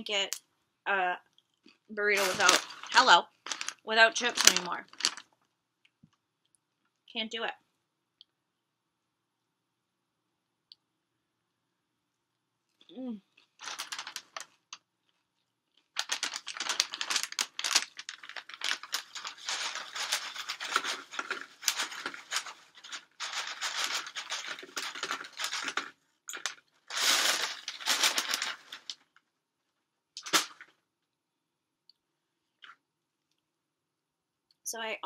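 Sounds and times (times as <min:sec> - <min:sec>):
crunching of tortilla chips: 0:02.2 - 0:05.3, 0:13.4 - 0:14.8, 0:15.8 - 0:29.0, 0:30.2 - 0:30.7.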